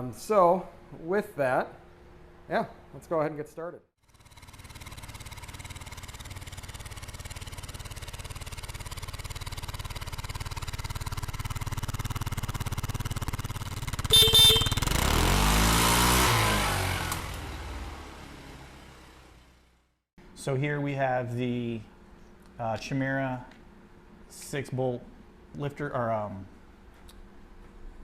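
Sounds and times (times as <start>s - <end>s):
motorcycle engine passing: 4.0s - 19.8s.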